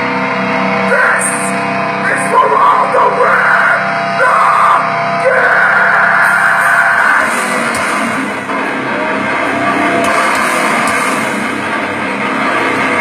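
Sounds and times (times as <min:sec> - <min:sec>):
distorted guitars: 0:00.0 - 0:13.0
vocalist shouting: 0:00.9 - 0:07.4.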